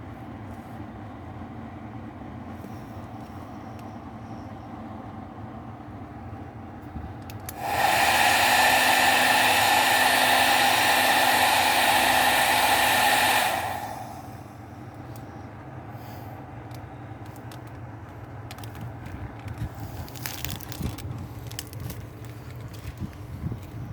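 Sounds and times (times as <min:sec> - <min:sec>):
hair dryer whirring: 0:07.5 - 0:14.4.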